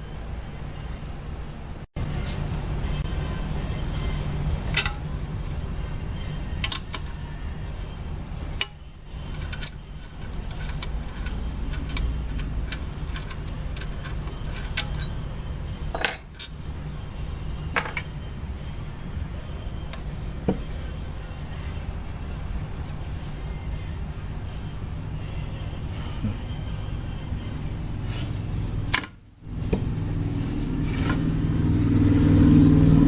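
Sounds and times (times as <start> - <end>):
low hum: 0.0 - 33.0
metal parts and tools clinking: 4.0 - 5.1, 6.5 - 7.6, 8.5 - 16.7, 17.7 - 18.1.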